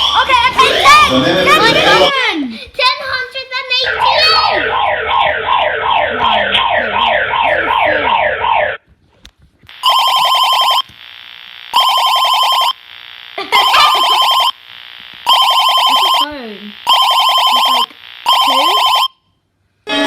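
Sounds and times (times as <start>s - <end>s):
alert alarm falling sweeps: 3.9s - 8.7s, 9.7s - 10.8s, 11.7s - 12.8s, 13.5s - 14.6s, 15.2s - 19.2s
telephone-style ring: 9.8s - 10.8s, 11.8s - 12.8s, 15.3s - 16.3s, 16.9s - 19.2s.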